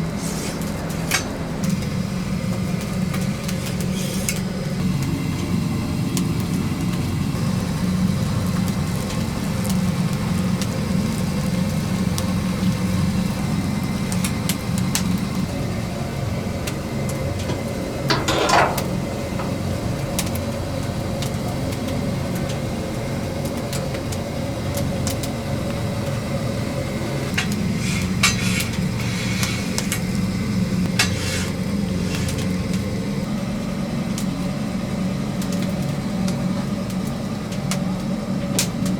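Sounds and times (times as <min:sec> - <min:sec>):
low machine hum: 0:00.0 - 0:38.9
dishes and utensils clinking: 0:17.5 - 0:19.7.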